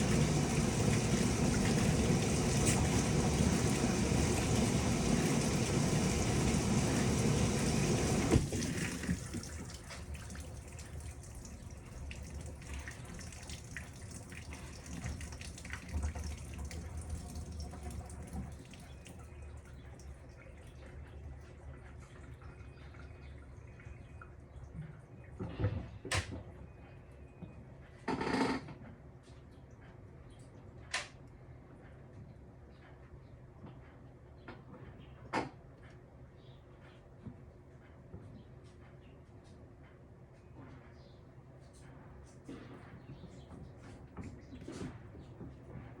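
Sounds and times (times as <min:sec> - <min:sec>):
water rushing into tub: 0:00.0 - 0:19.2
faint water drips: 0:00.0 - 0:25.4.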